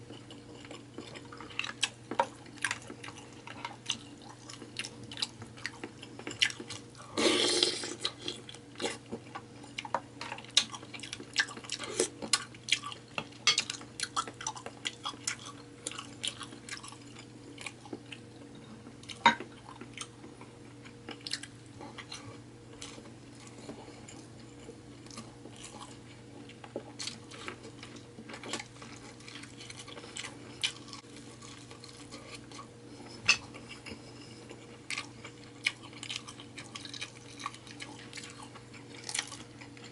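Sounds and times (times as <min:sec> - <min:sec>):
wet chewing and smacking: 0:00.0 - 0:07.0, 0:07.9 - 0:39.9
steady low hum: 0:00.0 - 0:39.9
loud crunch or slurp: 0:07.2 - 0:08.0.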